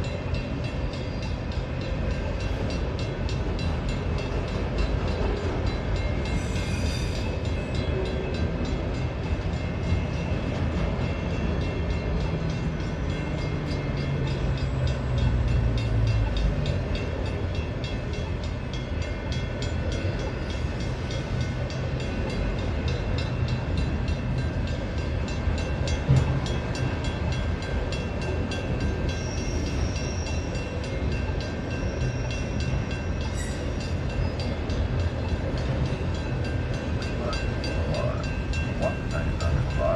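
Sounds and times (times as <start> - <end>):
train wheels rumbling on rails: 0.0 - 39.9.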